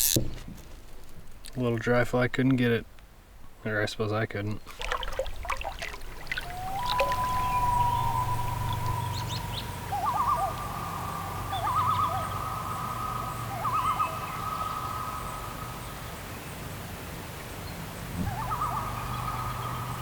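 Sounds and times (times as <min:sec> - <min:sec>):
bird whistle-like call with trills: 0:06.5 - 0:15.2.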